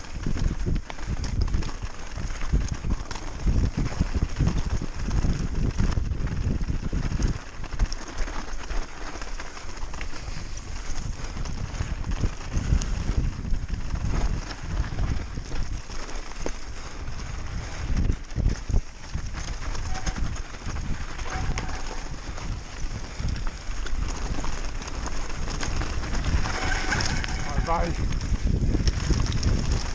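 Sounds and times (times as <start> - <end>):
low rumbling wind noise: 0.0 - 29.9.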